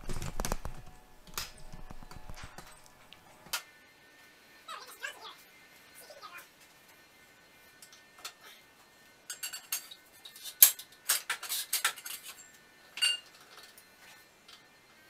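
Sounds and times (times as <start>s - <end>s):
metal tools clinking and clanking: 9.3s - 13.9s.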